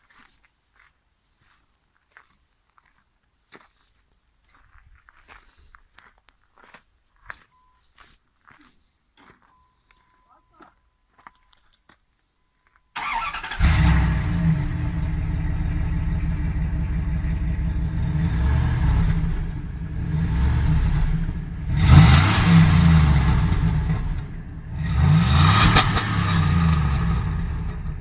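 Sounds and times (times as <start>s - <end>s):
engine revving: 13.0s - 28.0s
engine starting and idling: 13.0s - 28.0s.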